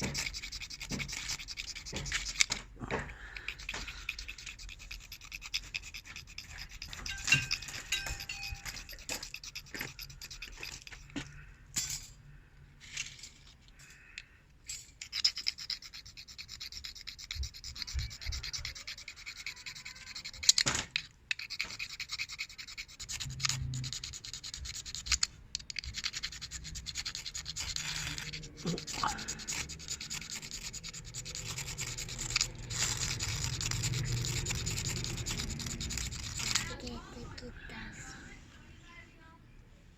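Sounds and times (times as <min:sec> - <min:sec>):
fire-starter rod scraping: 0:00.0 - 0:11.4, 0:23.0 - 0:38.2.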